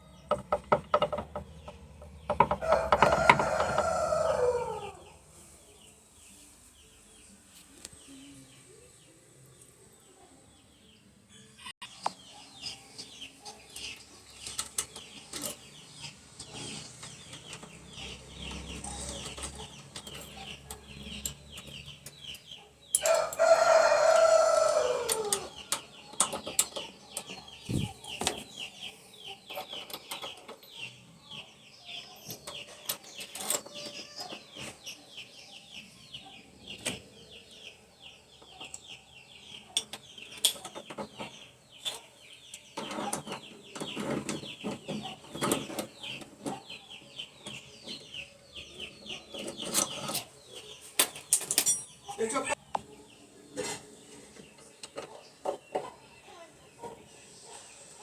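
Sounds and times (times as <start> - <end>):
chickens and small birds chirping: 0.0 - 58.0
rooster crowing: 2.6 - 5.2, 23.0 - 25.6.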